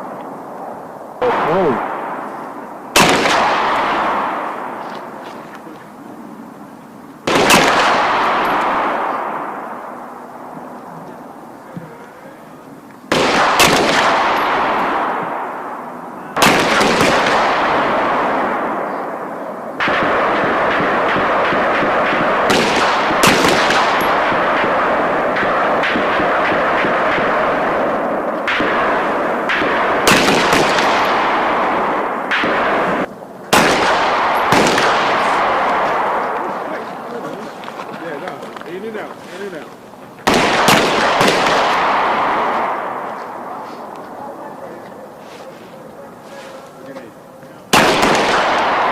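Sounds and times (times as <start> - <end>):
rapid gunshots echoing: 1.2 - 5.2, 7.2 - 10.2, 13.1 - 37.6, 40.2 - 43.7, 47.7 - 48.9.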